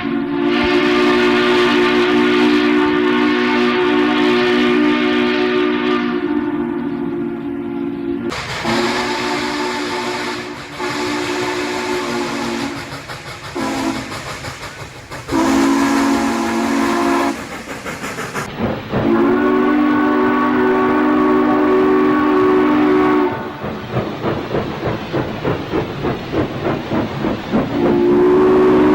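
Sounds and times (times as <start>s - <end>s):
steam train whistle blasts: 0.0s - 14.3s, 15.3s - 17.4s, 19.0s - 23.6s, 27.7s - 28.9s
steam hiss: 0.0s - 28.9s
train noise: 0.0s - 28.9s.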